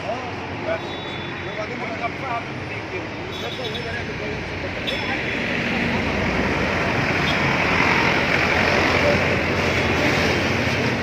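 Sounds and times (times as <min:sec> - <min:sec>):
road vehicle passing by: 0:04.1 - 0:11.0.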